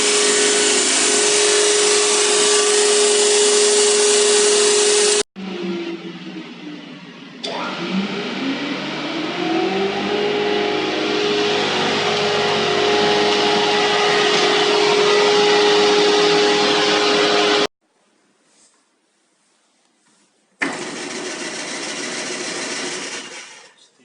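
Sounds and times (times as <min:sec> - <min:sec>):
moulder spindle motors running: 0:00.0 - 0:05.2, 0:20.6 - 0:23.8
motor whine: 0:00.0 - 0:17.7.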